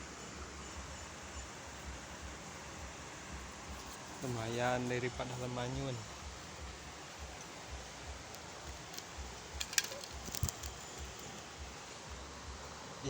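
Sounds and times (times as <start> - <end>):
outdoor background noise: 0.0 - 13.0
small sharp clicks: 8.2 - 11.5.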